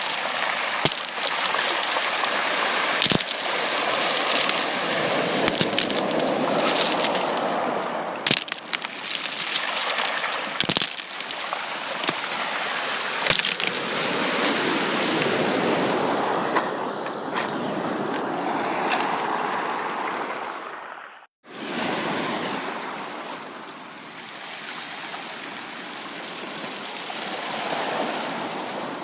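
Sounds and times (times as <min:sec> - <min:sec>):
sharp crackles and clicks: 0:00.0 - 0:04.8, 0:05.4 - 0:07.6, 0:08.3 - 0:12.2, 0:13.3 - 0:13.8
sea waves washing onto beach: 0:00.0 - 0:20.3, 0:21.5 - 0:29.0.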